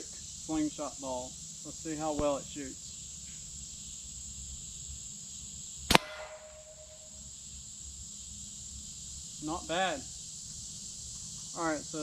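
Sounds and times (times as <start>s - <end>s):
slingshot crack: 5.9s - 7.1s.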